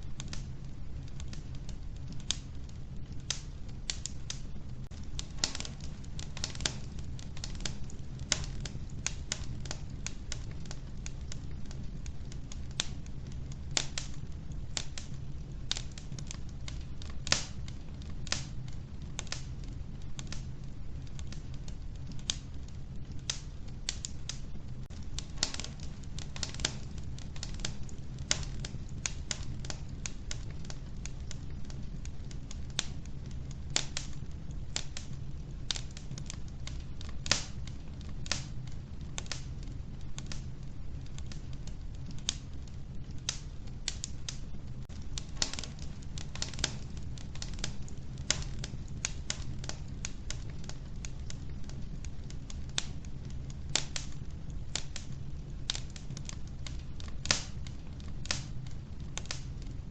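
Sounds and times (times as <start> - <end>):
low rumble of burning: 0.0 - 59.9
wood fire snaps and pops: 0.0 - 59.9.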